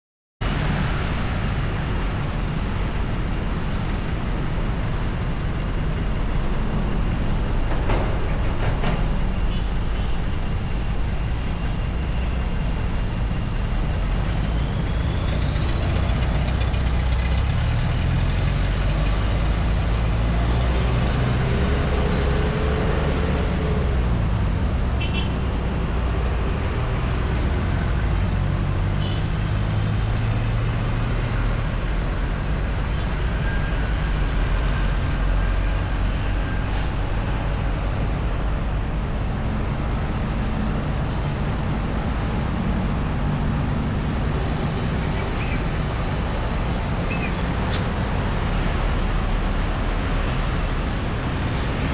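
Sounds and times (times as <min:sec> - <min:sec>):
road traffic rumble: 0:00.4 - 0:51.9.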